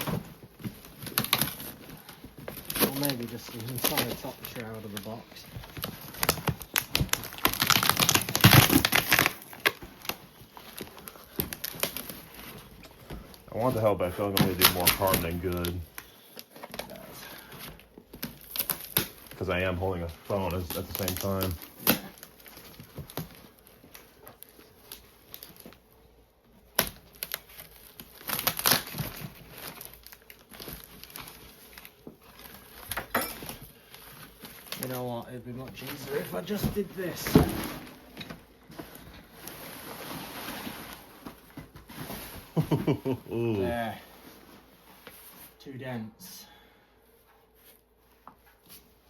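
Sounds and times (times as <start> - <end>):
cardboard crinkling and tearing: 0.0 - 25.8, 26.6 - 44.1
cardboard box tearing and crinkling: 5.7 - 12.4, 26.8 - 31.5.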